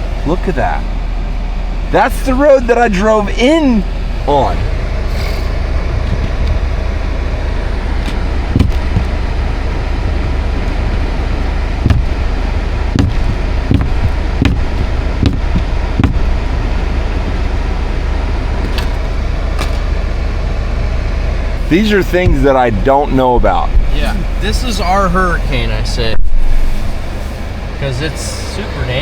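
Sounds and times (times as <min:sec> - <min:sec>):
truck engine and road drone: 0:00.0 - 0:29.0
short thumps: 0:07.8 - 0:20.0, 0:22.1 - 0:23.9.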